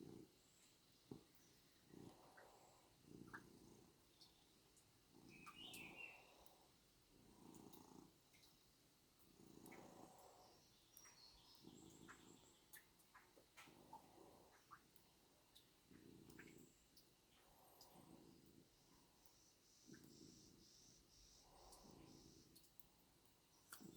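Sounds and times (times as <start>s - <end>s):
cat purring: 0.0s - 23.9s.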